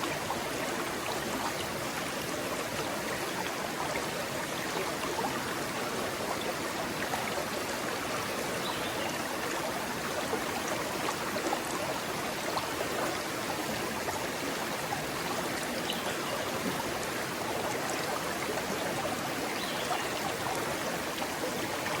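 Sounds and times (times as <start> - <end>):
stream rushing over rocks: 0.0 - 22.0.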